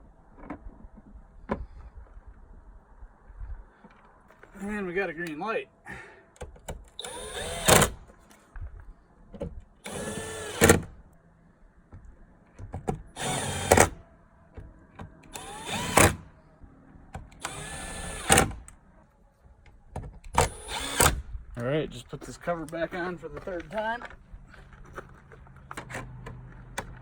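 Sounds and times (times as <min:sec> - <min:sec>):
power drill driving screws: 0:07.0 - 0:08.0, 0:09.8 - 0:10.9, 0:13.1 - 0:14.0, 0:15.3 - 0:16.3, 0:17.4 - 0:18.6, 0:20.4 - 0:21.2.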